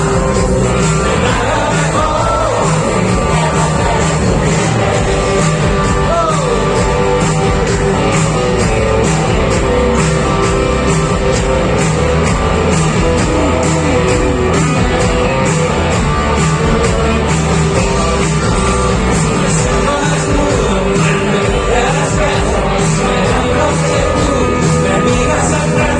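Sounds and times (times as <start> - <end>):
person singing: 0.0 - 7.6, 17.8 - 25.9
live rock band playing: 0.0 - 25.9.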